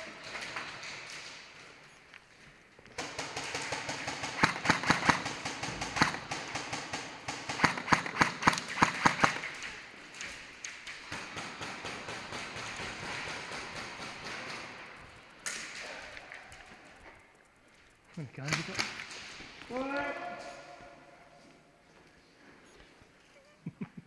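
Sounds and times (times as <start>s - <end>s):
airsoft guns firing automatic: 2.9s - 9.9s, 10.8s - 16.9s
loud sharp cracks: 3.0s - 9.8s, 10.6s - 16.4s.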